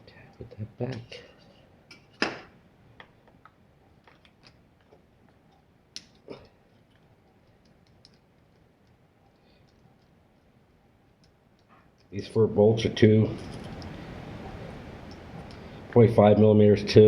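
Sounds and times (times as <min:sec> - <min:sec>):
metal tools clicking and tapping: 0:04.0 - 0:12.2, 0:13.4 - 0:14.0.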